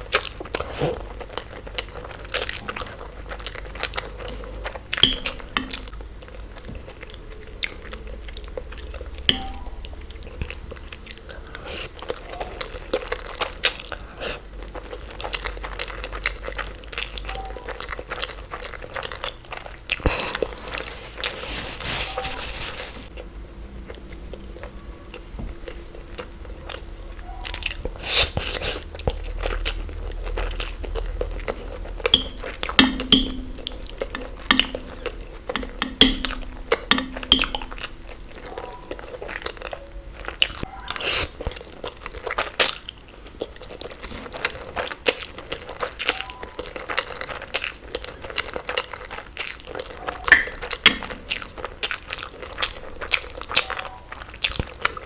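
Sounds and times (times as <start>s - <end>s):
crunchy chewing: 0.0s - 55.0s.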